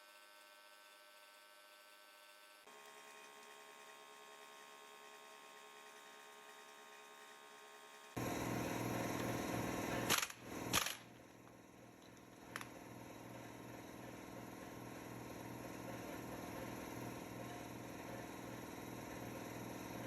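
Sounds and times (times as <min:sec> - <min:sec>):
impact wrench whining and hammering: 0:08.2 - 0:13.9
faint hum: 0:08.2 - 0:20.0.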